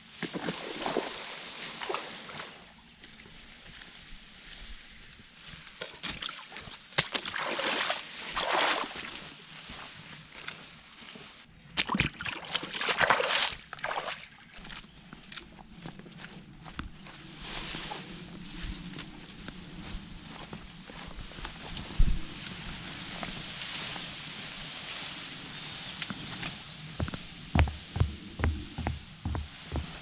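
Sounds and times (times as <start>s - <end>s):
leafy branches rustling and crackling: 0.0s - 11.5s, 17.0s - 30.0s
footsteps on wet ground: 12.6s - 24.1s, 25.8s - 30.0s.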